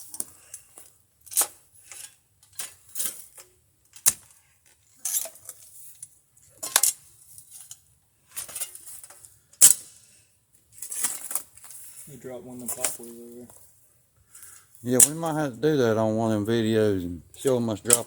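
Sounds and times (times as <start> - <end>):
digging tool clinking on hard ground: 4.9 - 9.8, 14.9 - 15.4, 17.4 - 18.0.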